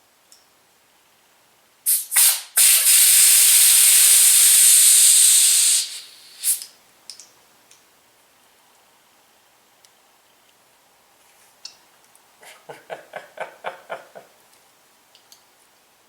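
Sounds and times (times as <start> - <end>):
pressurised gas hissing: 1.8 - 6.7.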